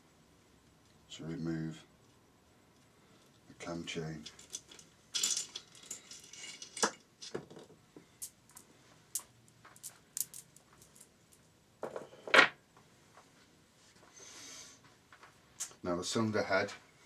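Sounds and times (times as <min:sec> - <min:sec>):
metal chain links clinking: 0:04.2 - 0:07.4.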